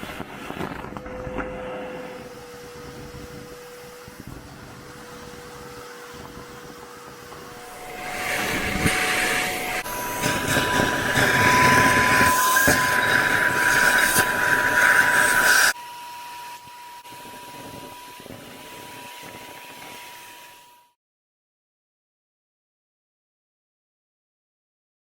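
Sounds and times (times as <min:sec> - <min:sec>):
vacuum cleaner motor whine: 0:00.0 - 0:21.0
vacuum suction rushing: 0:07.5 - 0:15.8.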